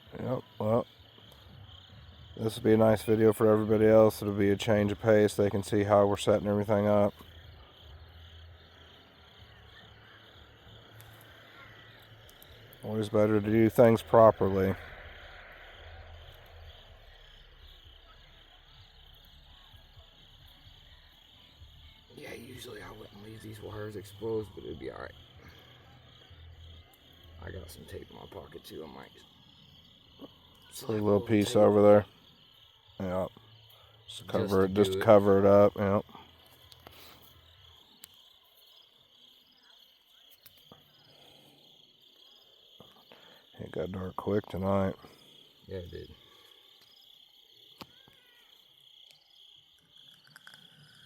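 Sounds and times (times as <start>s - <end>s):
crickets chirping: 0.0s - 51.0s
faint clicks: 10.8s - 12.8s.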